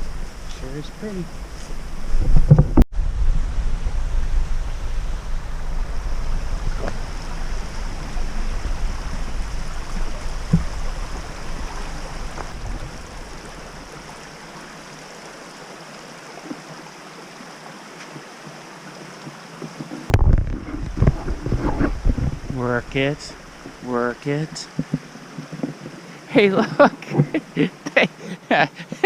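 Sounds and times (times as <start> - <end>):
flowing creek: 0.0 - 2.8, 3.4 - 29.0
wind rumbling on microphone: 0.0 - 15.6, 19.2 - 26.1.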